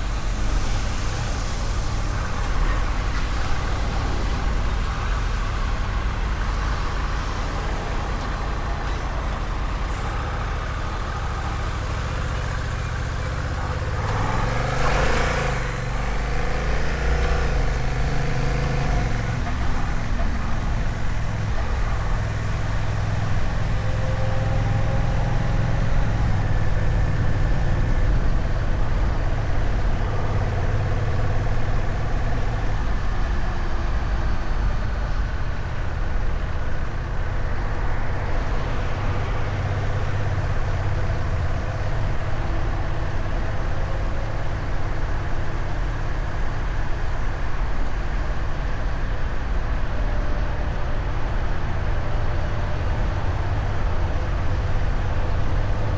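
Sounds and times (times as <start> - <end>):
motorcycle engine cruising: 0.0 - 34.1, 36.8 - 46.9
road noise: 0.0 - 55.9.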